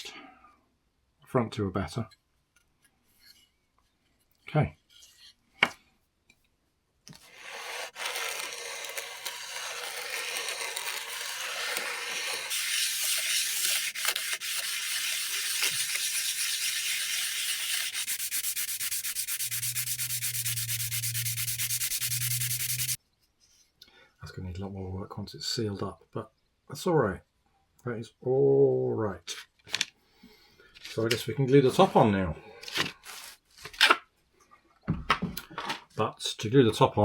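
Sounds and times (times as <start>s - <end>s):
sanding wood: 7.3s - 23.0s.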